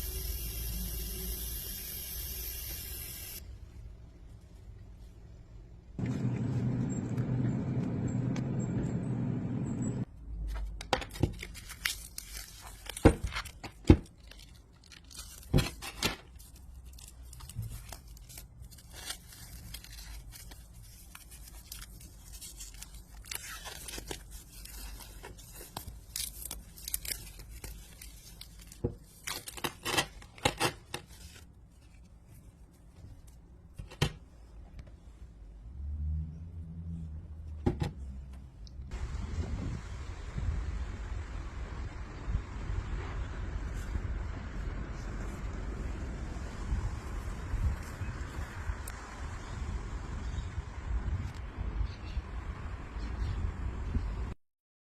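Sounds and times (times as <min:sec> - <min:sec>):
steady low hum: 0:06.0 - 0:10.1
scraping and tearing: 0:10.6 - 0:33.4.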